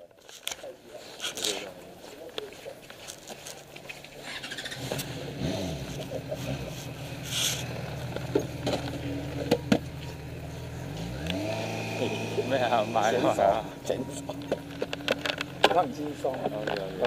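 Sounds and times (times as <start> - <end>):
motorcycle engine running: 4.2 - 17.0.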